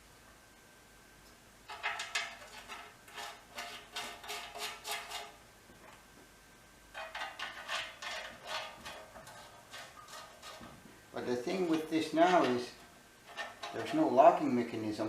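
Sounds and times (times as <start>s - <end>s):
hand tools scraping and clicking metal: 1.7s - 5.4s, 6.9s - 14.2s.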